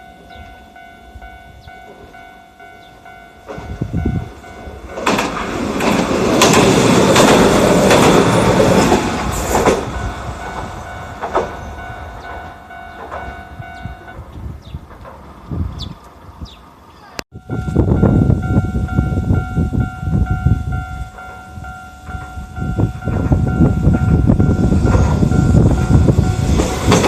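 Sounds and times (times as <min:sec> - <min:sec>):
crossing warning bell ringing: 0:00.0 - 0:14.8, 0:17.3 - 0:27.0
tram wheels clacking over rail joints: 0:01.7 - 0:16.2, 0:22.1 - 0:27.0.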